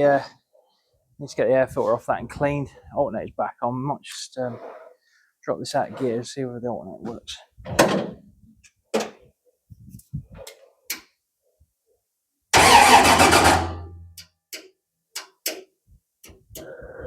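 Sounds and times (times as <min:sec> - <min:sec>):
race car engine firing: 0:12.6 - 0:14.1
small clicks and knocks: 0:14.2 - 0:16.4.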